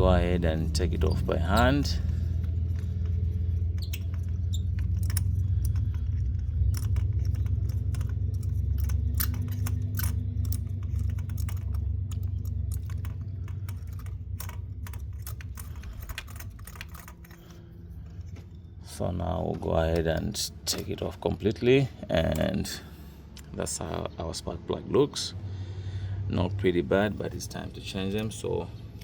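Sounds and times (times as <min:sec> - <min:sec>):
steady low rumble: 0:00.0 - 0:23.9
metallic clicks of socket wrench: 0:03.7 - 0:17.6.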